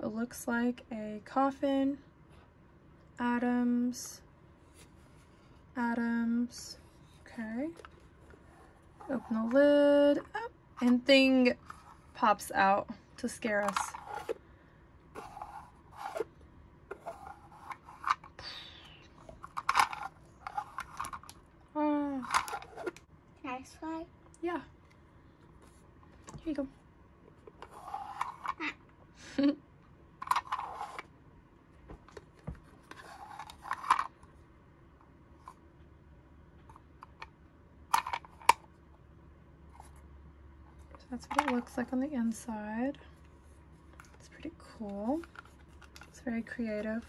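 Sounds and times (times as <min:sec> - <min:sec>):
plastic toy clicking and rubbing: 0:13.5 - 0:14.4, 0:15.2 - 0:16.3, 0:16.9 - 0:18.4, 0:19.2 - 0:21.4, 0:22.2 - 0:23.0, 0:27.5 - 0:28.7, 0:30.2 - 0:31.1, 0:32.8 - 0:34.2, 0:37.9 - 0:38.7, 0:45.1 - 0:46.2.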